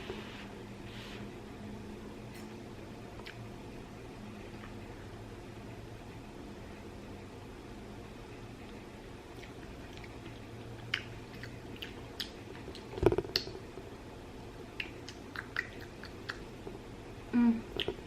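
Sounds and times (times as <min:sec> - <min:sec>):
wet mouth clicks and smacks: 0:03.2 - 0:03.4, 0:09.4 - 0:13.6, 0:14.8 - 0:16.5, 0:17.7 - 0:18.0
person chewing noodles: 0:09.3 - 0:13.6
person humming: 0:17.3 - 0:17.8.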